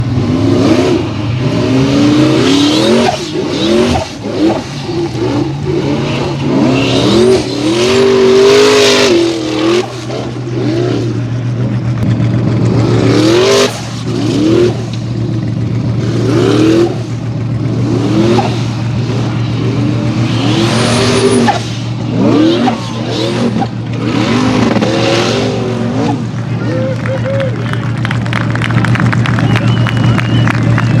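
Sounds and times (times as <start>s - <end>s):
buggy engine revving: 0.0s - 31.0s
tyres spinning in dirt: 26.4s - 31.0s.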